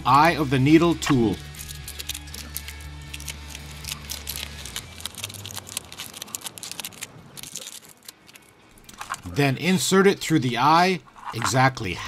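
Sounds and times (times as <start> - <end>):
rubber strip crinkling: 1.1 - 9.3, 11.0 - 11.6.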